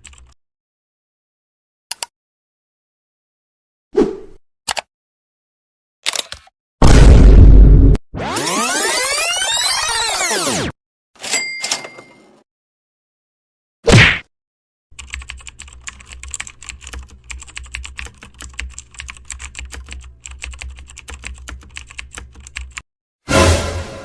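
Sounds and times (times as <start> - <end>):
computer keyboard typing: 0.0 - 0.4, 15.0 - 22.8.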